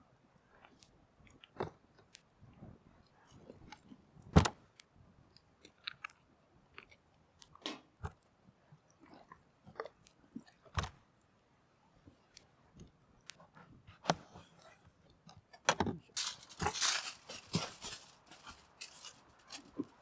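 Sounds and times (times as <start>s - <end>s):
small clicks of handling: 15.7s - 19.9s.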